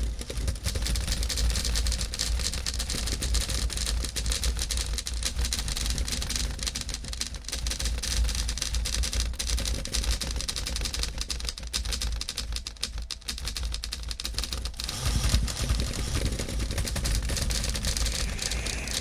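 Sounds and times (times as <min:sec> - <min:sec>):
steady low rumble: 0:15.4 - 0:19.0.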